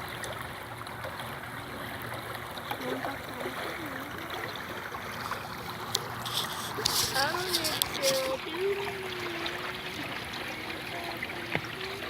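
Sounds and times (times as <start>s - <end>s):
flowing water rushing: 0.0s - 12.0s
faint voices: 6.6s - 12.0s.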